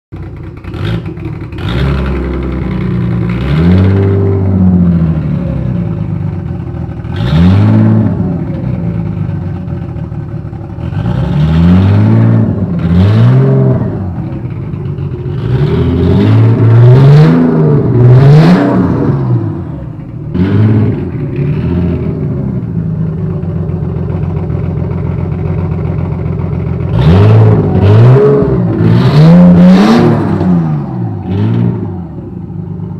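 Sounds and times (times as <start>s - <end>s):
rough engine idle: 0.1s - 16.5s, 18.9s - 29.0s, 30.6s - 32.9s
car engine revving: 0.4s - 32.9s.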